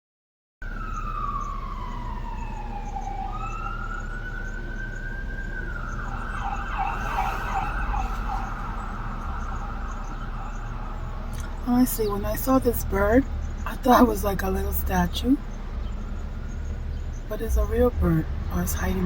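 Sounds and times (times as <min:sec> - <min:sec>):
emergency siren wailing and yelping: 0:00.6 - 0:19.0
steady low rumble: 0:00.7 - 0:19.0.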